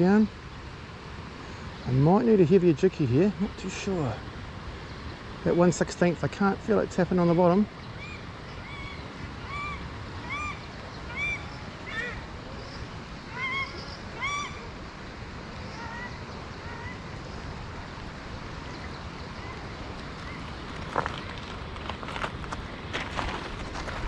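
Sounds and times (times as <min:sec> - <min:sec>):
river water rushing: 0:00.0 - 0:24.0
bird calling: 0:07.5 - 0:14.8, 0:15.6 - 0:17.9, 0:18.5 - 0:22.2.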